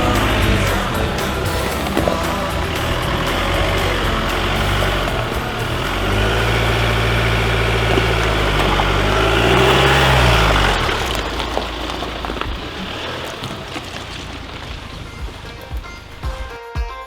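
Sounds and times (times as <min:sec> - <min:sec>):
truck engine pulling under load: 0:00.0 - 0:16.5.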